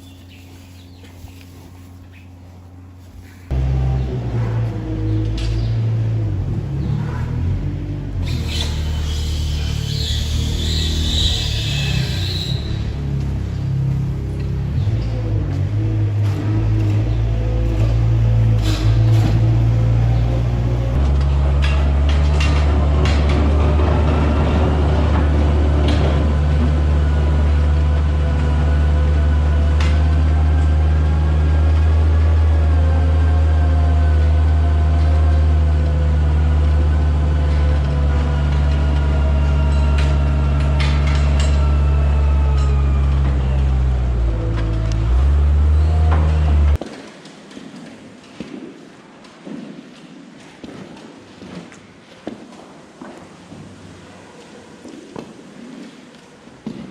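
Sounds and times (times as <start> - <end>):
heavy engine droning: 1.4 - 46.8.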